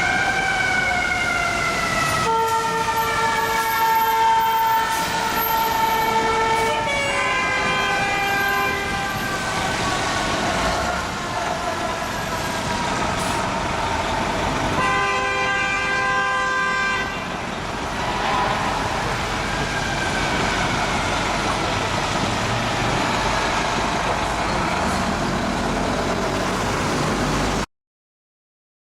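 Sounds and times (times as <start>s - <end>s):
fire engine siren wailing: 0.0s - 27.6s
fire engine horn blasts: 2.1s - 10.0s, 14.7s - 21.1s.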